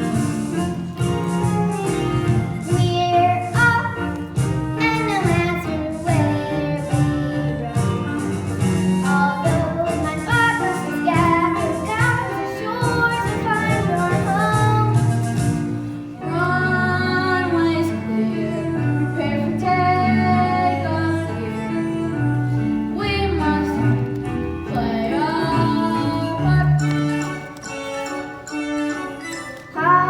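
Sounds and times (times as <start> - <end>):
instrumental accompaniment: 0.0 - 30.0
young voices singing: 24.7 - 26.8.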